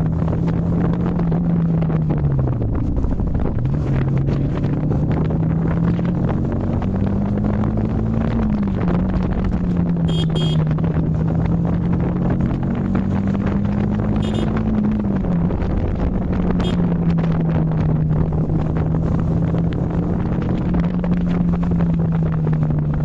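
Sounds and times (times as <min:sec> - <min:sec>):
wind buffeting microphone: 0:00.0 - 0:10.0, 0:10.6 - 0:23.0
motorcycle engine running: 0:00.0 - 0:23.0
horn beeps: 0:10.0 - 0:10.7, 0:14.1 - 0:14.6, 0:16.6 - 0:17.0.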